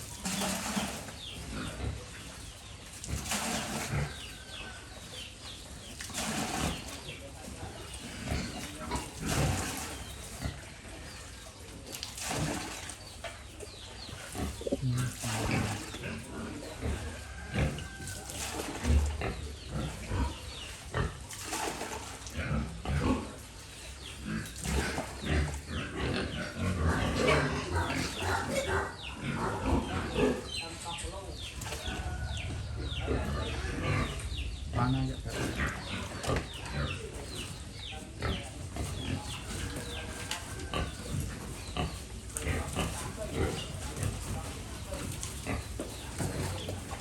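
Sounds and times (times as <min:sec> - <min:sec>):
pigs grunting: 0:00.0 - 0:05.3, 0:06.0 - 0:11.6, 0:12.2 - 0:47.0.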